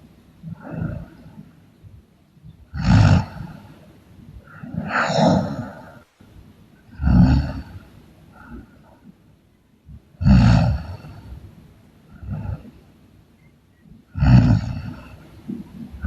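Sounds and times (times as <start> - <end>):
person snoring: 7.0 - 7.7, 14.2 - 15.0.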